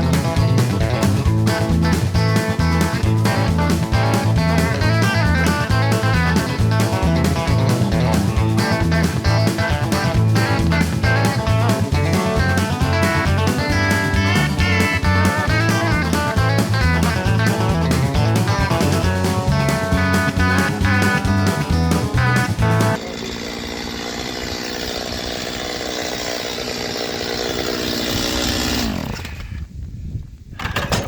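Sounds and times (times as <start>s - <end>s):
guitar instrumental over a beat: 0.0s - 23.0s.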